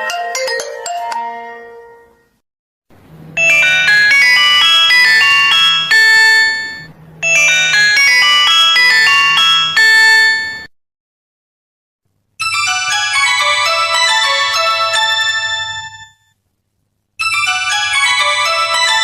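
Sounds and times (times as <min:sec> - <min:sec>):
mobile phone ringtone melody: 0:03.4 - 0:10.7, 0:12.4 - 0:16.2, 0:17.2 - 0:19.0.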